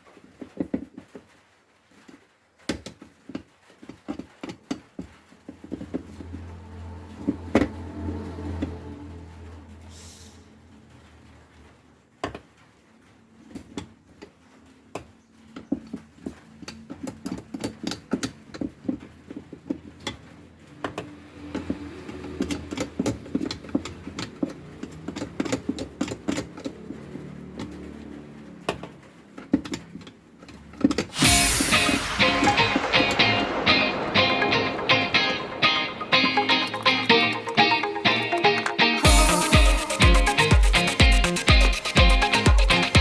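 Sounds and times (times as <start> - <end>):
low steady hum: 5.6 - 11.6, 31.2 - 37.6.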